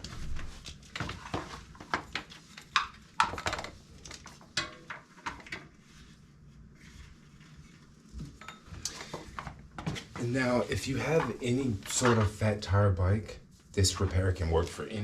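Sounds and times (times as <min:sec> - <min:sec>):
knocks and clatter of handled things: 0:00.0 - 0:05.8, 0:08.1 - 0:12.5.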